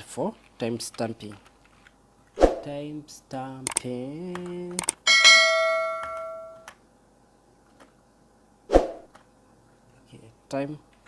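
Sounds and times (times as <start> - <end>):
bell-like chime ringing: 5.1 - 6.7.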